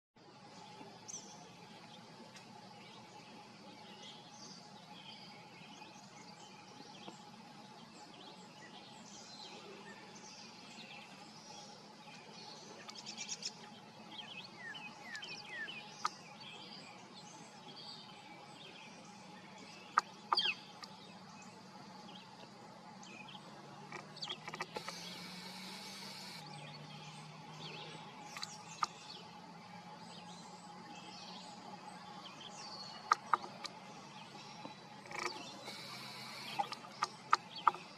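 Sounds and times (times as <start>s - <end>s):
birds chirping: 0.6s - 37.9s
steady hum: 13.5s - 37.9s.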